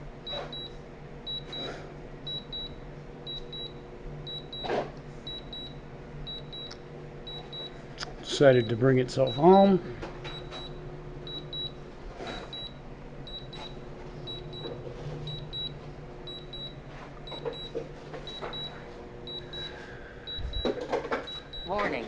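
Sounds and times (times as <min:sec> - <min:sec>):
steady low hum: 0:00.0 - 0:22.0.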